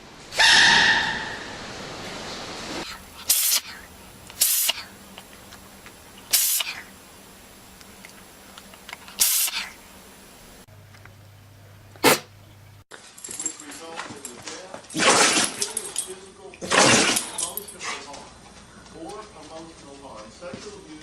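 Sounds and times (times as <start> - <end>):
animals sneezing: 2.8 - 5.0, 6.3 - 7.0, 9.1 - 9.8, 12.0 - 12.3.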